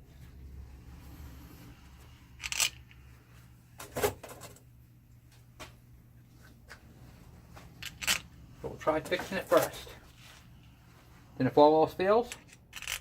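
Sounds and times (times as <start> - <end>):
low steady hum: 0.0 - 13.0
metal parts clinking: 2.4 - 3.0, 7.8 - 8.2, 12.3 - 13.0.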